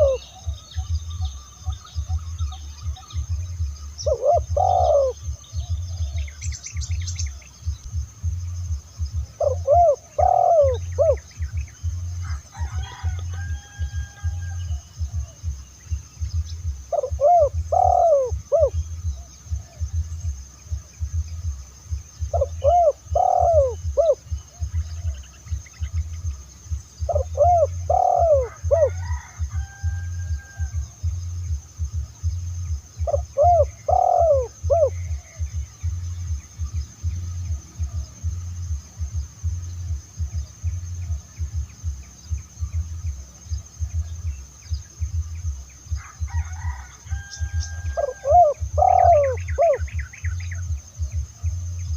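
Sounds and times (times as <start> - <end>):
dove cooing: 0.0 - 7.0, 9.0 - 15.7, 16.6 - 21.6, 22.2 - 26.0, 27.0 - 30.9, 32.8 - 39.6, 46.0 - 51.2
low pulsing throb: 0.0 - 51.9.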